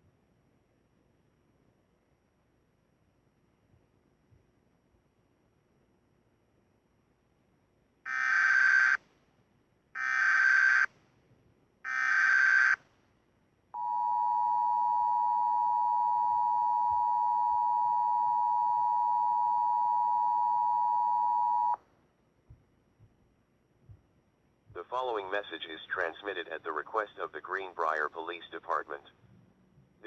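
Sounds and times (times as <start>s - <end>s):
two-tone attention signal: 13.8s - 21.8s.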